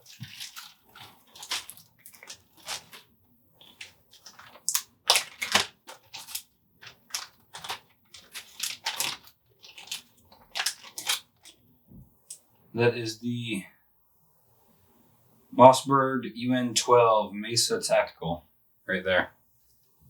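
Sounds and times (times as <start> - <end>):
packaging rustling and crinkling: 0.0 - 11.6.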